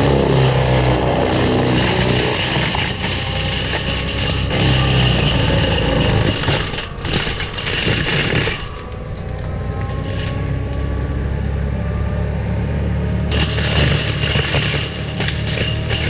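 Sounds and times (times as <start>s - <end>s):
cutting head grinding brush: 0.0s - 11.4s
mulcher engine running: 0.0s - 16.0s.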